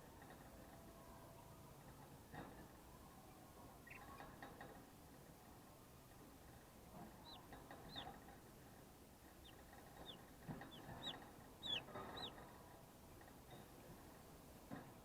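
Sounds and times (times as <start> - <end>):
chicks peeping: 3.8 - 4.3, 7.2 - 8.2, 9.3 - 12.5.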